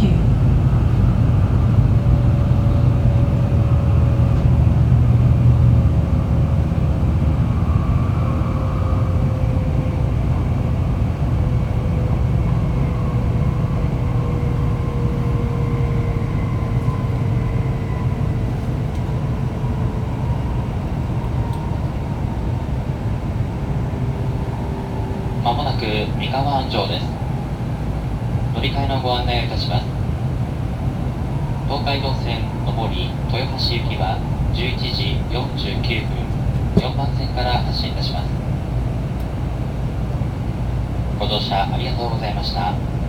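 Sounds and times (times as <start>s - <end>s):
train rumble inside car: 0.0s - 43.0s.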